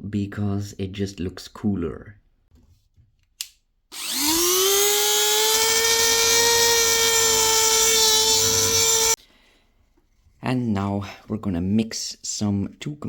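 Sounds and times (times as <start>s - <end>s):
rotary tool whining: 3.9s - 9.2s.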